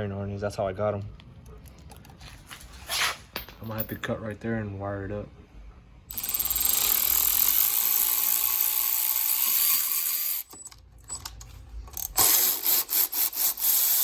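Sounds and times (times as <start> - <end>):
handheld power tool hissing: 12.2 - 14.0.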